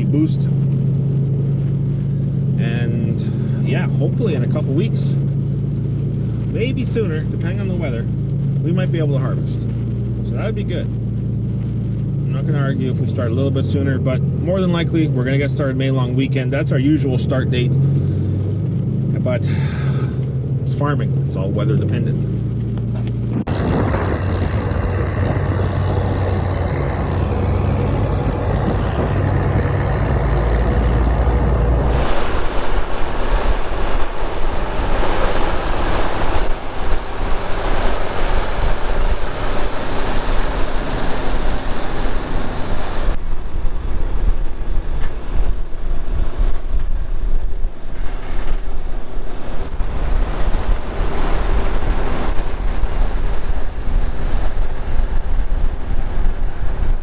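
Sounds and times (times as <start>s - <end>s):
farm vehicle engines running: 22.7s - 32.2s.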